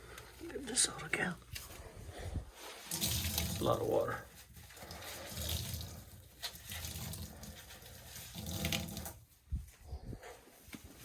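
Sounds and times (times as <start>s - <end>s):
water draining from washing machine: 2.8s - 9.3s.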